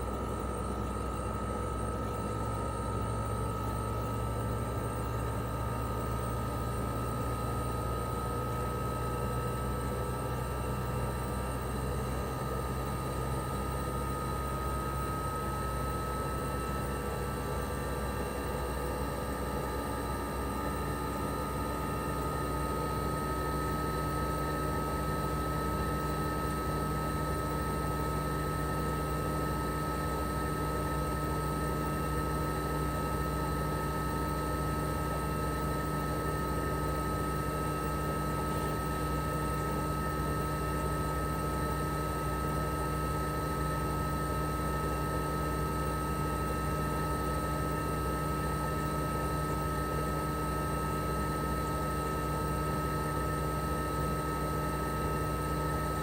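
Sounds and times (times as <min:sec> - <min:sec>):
compressor humming: 0:00.0 - 0:08.6, 0:23.8 - 0:56.0.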